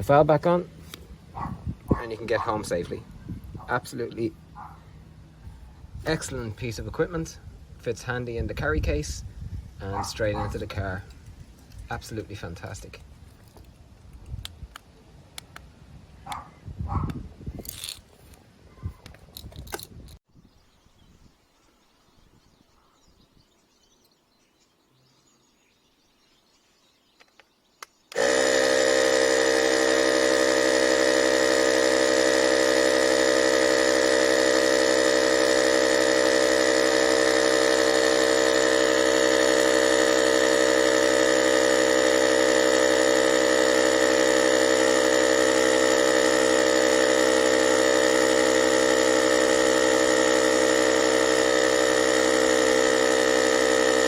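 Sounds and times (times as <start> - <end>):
tyre inflator compressor buzzing: 28.1 - 54.0.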